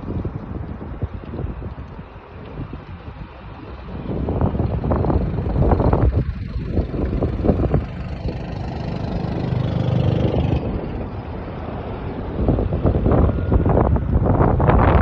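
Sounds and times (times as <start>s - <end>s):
wind buffeting microphone: 0.0s - 15.0s
car driving rumble: 3.8s - 15.0s.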